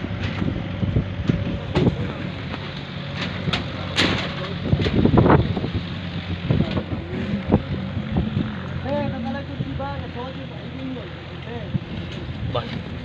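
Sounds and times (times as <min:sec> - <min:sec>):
engine running steadily: 0:00.0 - 0:13.0
sharp knocks and clatters: 0:01.2 - 0:05.6.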